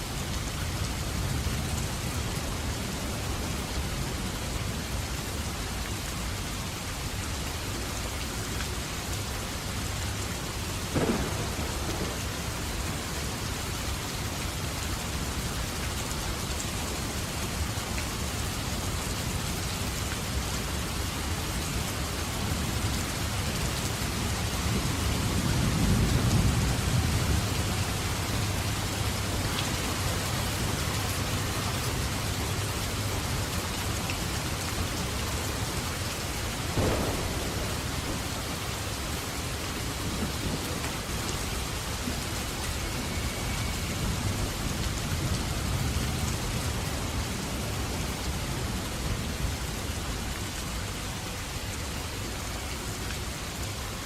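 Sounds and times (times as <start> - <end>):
steady rain falling: 0.0 - 54.0
thunder rumble: 10.8 - 13.4, 36.6 - 48.4.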